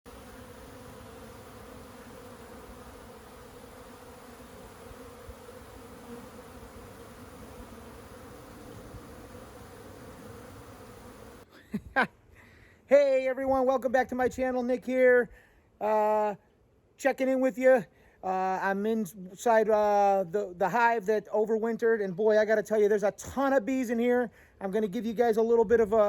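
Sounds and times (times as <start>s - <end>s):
honeybees buzzing: 0.1s - 11.5s.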